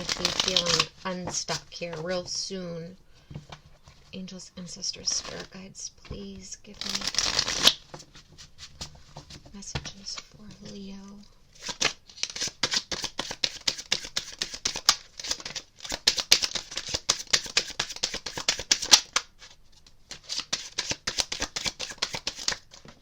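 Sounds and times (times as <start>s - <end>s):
cards being shuffled: 0.0s - 2.1s, 6.8s - 9.0s, 11.6s - 23.0s.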